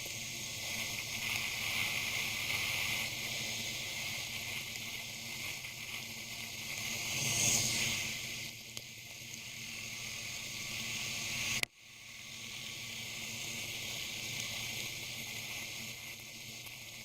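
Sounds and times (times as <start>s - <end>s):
wind and rain hiss: 0.0s - 17.0s.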